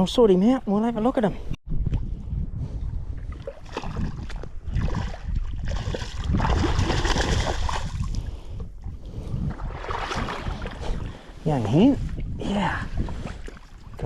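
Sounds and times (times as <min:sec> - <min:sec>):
wind rumbling on microphone: 0:01.3 - 0:14.0
water splashing: 0:03.3 - 0:08.2, 0:09.5 - 0:11.2.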